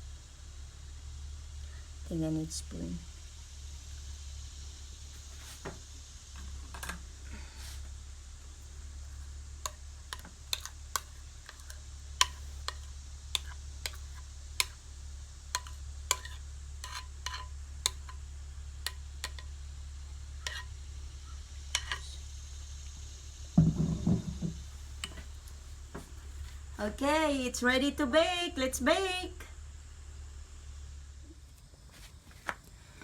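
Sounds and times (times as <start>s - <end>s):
low steady hum: 0.0s - 33.0s
spoon clicking and tapping: 9.6s - 14.8s, 15.5s - 18.2s, 18.8s - 19.5s
loud thump: 23.6s - 24.6s.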